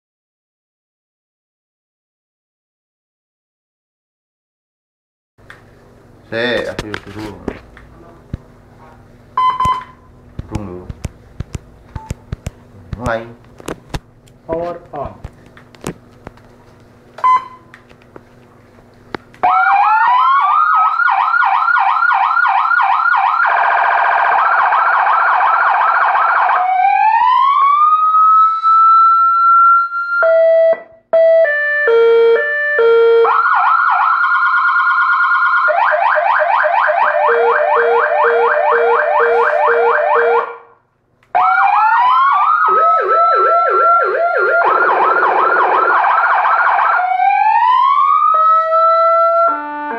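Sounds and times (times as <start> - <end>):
electronic siren cycling tones: 19.4 - 40.8, 41.4 - 49.9.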